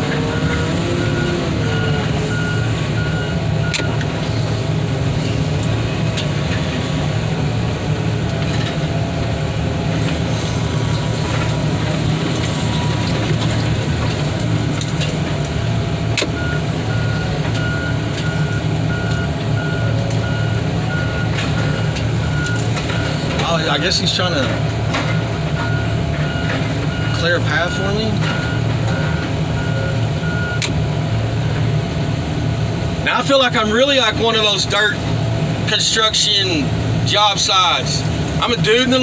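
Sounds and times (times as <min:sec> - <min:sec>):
diesel engine running: 0:00.0 - 0:39.0
backup alarm beeping: 0:00.3 - 0:04.0, 0:16.4 - 0:23.2.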